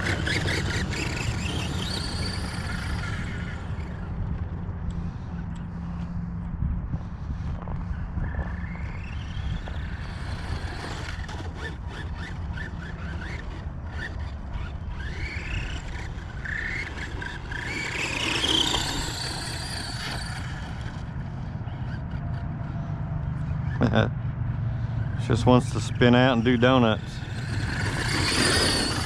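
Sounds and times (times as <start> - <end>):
tyres scrabbling on loose ground: 0.0 - 4.0, 9.0 - 21.1, 26.6 - 29.0
electric motor whining: 0.0 - 4.5, 8.2 - 23.6, 25.0 - 29.0.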